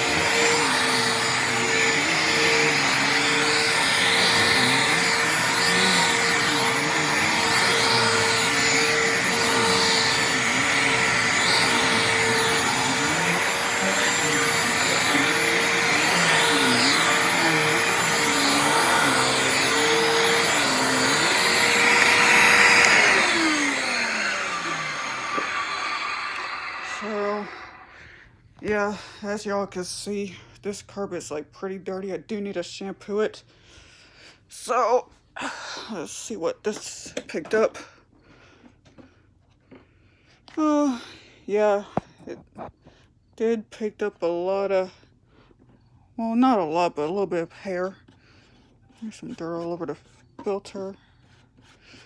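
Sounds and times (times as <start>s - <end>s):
vacuum cleaner running on carpet: 0.0s - 28.1s
vacuum motor winding down: 0.0s - 28.2s.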